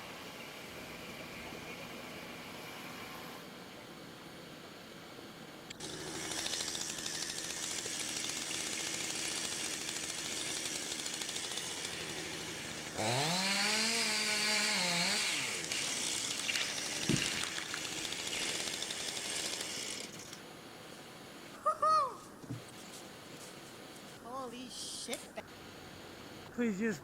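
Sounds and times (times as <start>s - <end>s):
chainsaw engine revving: 5.8s - 20.4s.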